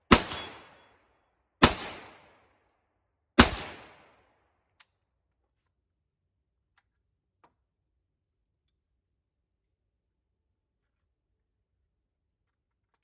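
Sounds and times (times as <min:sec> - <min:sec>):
rifle shots with echo: 0:00.1 - 0:00.9, 0:01.6 - 0:02.4, 0:03.4 - 0:04.2.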